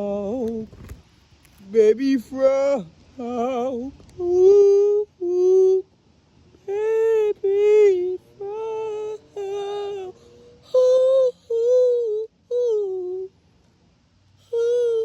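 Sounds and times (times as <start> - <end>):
person singing high wordless notes: 1.6 - 5.9, 6.6 - 13.3, 14.4 - 15.0.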